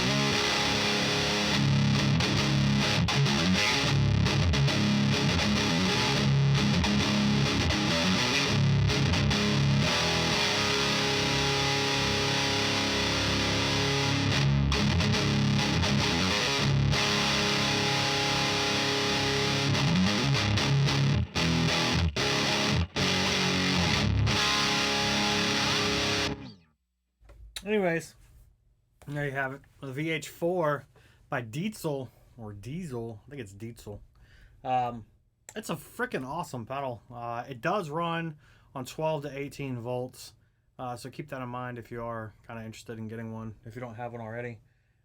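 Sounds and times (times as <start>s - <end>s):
distorted electric guitar riffs: 0.0s - 26.6s.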